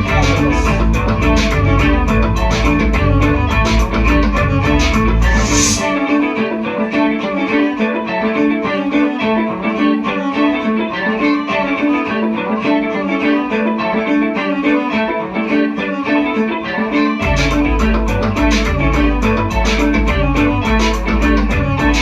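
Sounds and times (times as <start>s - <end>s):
bass and drums: 0.0s - 5.9s, 17.2s - 22.0s
plucked string figure: 0.0s - 22.0s.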